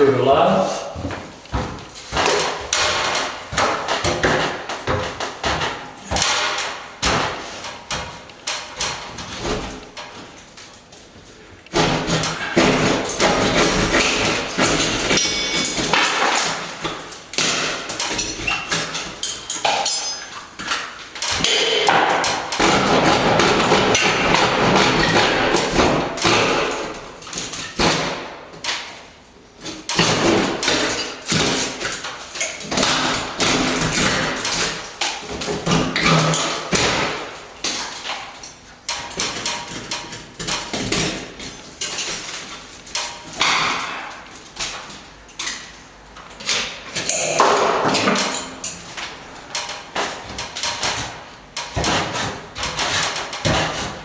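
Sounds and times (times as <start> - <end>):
knocks and thuds: 1.0 - 8.2, 21.3 - 28.3
hand saw cutting wood: 51.8 - 54.0.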